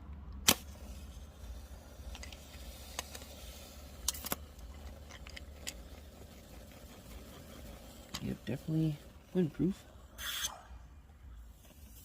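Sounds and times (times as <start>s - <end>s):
match burning with low rumble: 0.0s - 12.0s
small clicks and crackles: 0.3s - 9.5s.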